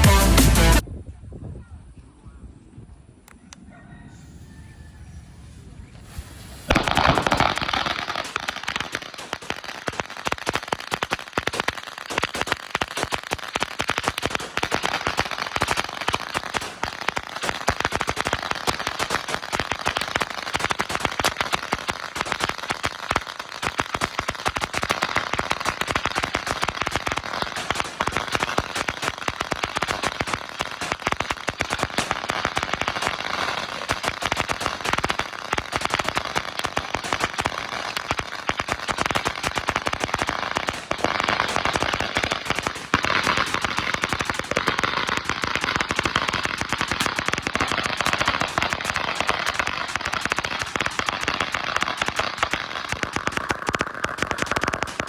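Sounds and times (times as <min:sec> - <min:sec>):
firecrackers crackling: 0:05.4 - 0:55.0.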